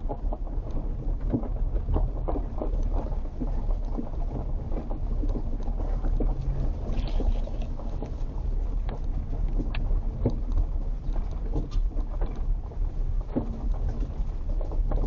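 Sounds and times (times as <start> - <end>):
vehicle rumbling on rocky road: 0.1 - 15.0.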